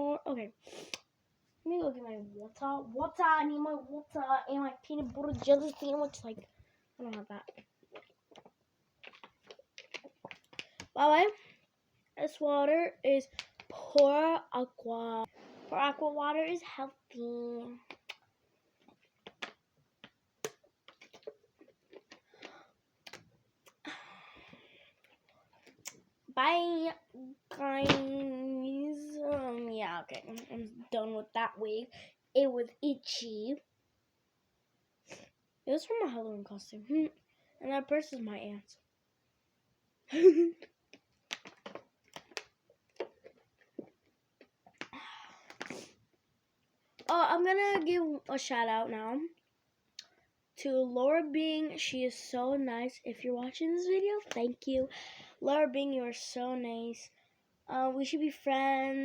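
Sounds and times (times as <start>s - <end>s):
faint clicks and taps: 4.9s - 11.7s, 13.2s - 14.2s, 17.8s - 23.8s, 40.6s - 46.2s.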